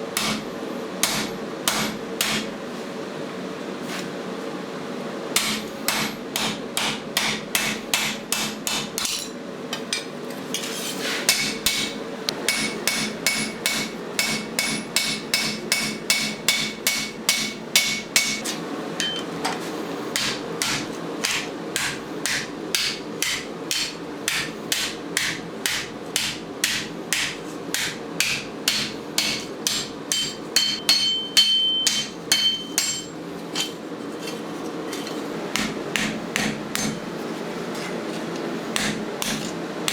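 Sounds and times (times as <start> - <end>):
hammer striking steel: 1.0 - 2.5, 5.4 - 9.3, 11.3 - 18.4, 20.2 - 33.8, 35.5 - 37.0, 38.8 - 39.9
high metallic ringing: 29.7 - 33.8.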